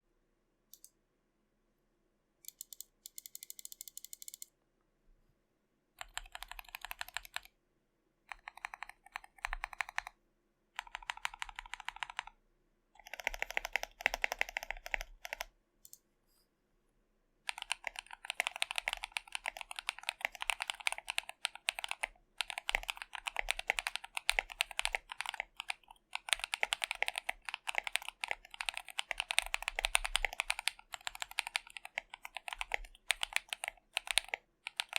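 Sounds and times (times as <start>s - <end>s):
mechanical keyboard typing: 2.5s - 4.5s, 6.0s - 7.5s, 8.3s - 10.2s, 10.8s - 12.4s, 13.0s - 15.5s, 17.5s - 34.9s.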